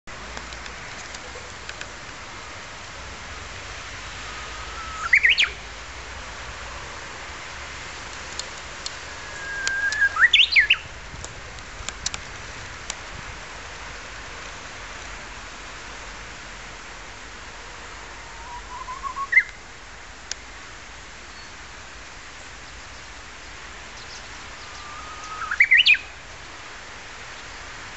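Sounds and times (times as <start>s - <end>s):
bird whistling song: 4.3s - 5.6s, 9.1s - 10.9s, 18.2s - 19.6s, 24.0s - 26.1s.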